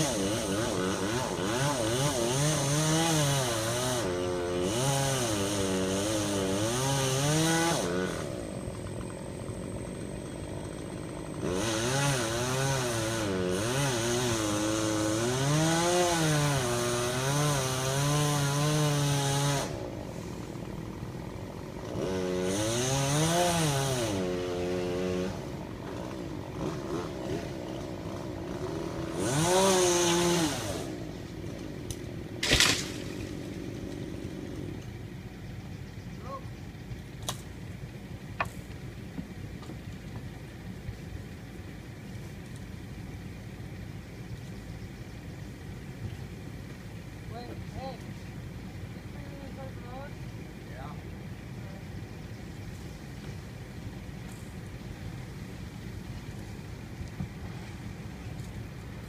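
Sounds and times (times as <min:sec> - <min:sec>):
chainsaw cutting wood: 0:00.0 - 0:35.0.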